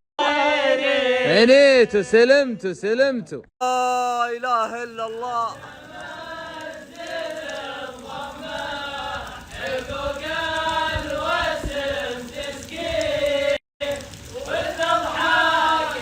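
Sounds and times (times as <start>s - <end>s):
person chanting a cappella: 0.2s - 2.2s, 3.6s - 16.0s.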